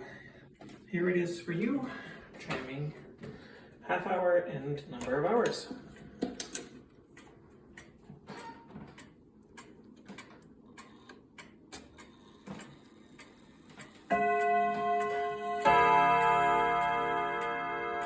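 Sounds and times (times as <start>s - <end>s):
clock pendulum ticking: 5.0s - 18.0s
clock chime rods striking: 14.1s - 18.0s.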